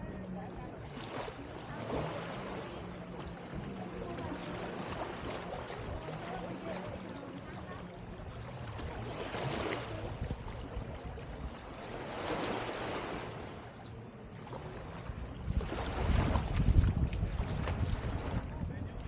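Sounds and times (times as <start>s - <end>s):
small waves washing onto beach: 0.0s - 19.0s
wind buffeting microphone: 2.8s - 13.3s, 14.9s - 19.0s.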